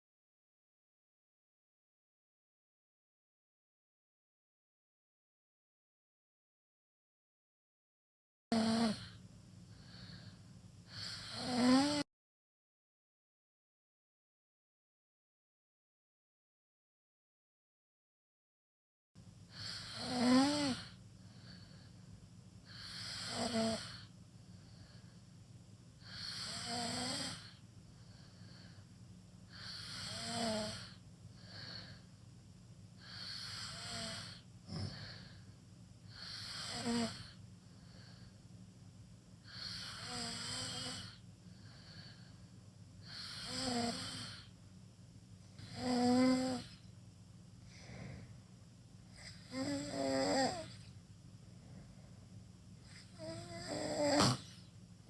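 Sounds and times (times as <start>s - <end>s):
person snoring: 8.5s - 9.2s, 9.8s - 12.1s, 19.5s - 21.8s, 22.7s - 24.1s, 26.0s - 27.6s, 29.5s - 32.0s, 33.0s - 35.4s, 36.1s - 38.2s, 39.4s - 42.2s, 43.0s - 44.5s, 45.6s - 46.8s, 49.2s - 50.9s, 52.8s - 54.7s.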